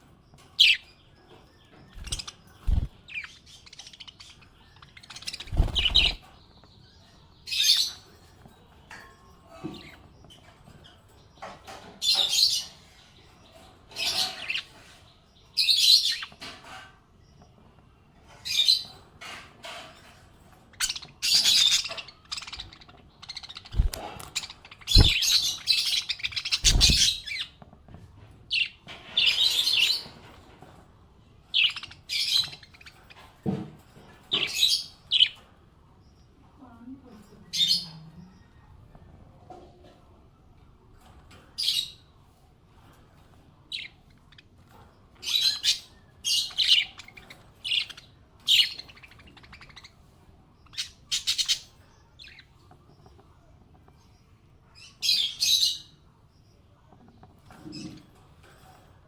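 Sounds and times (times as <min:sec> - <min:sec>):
parrots chirping: 0:01.9 - 0:06.3, 0:20.7 - 0:27.6, 0:31.5 - 0:33.2, 0:45.2 - 0:50.0, 0:50.6 - 0:52.5.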